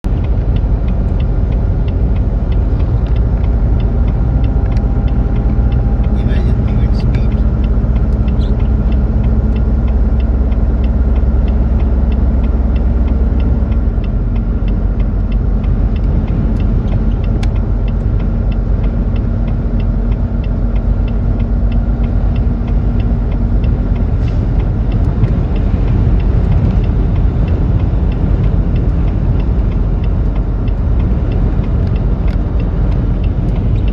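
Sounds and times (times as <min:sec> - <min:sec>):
faint regular ticking: 0:00.1 - 0:33.9
wind buffeting microphone: 0:20.6 - 0:33.9.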